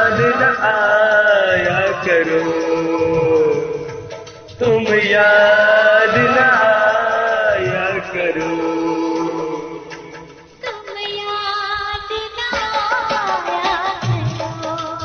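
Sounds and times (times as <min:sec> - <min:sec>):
man singing: 0:00.0 - 0:10.3
instrumental accompaniment: 0:00.0 - 0:15.0.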